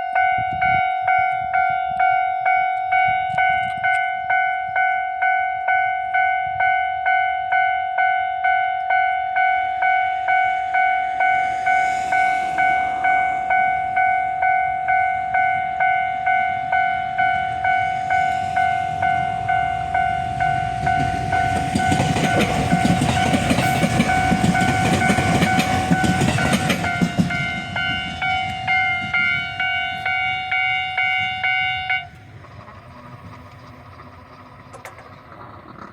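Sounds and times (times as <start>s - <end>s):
level crossing warning bell: 0.0s - 33.4s
train wheels clattering on rails: 15.4s - 35.9s.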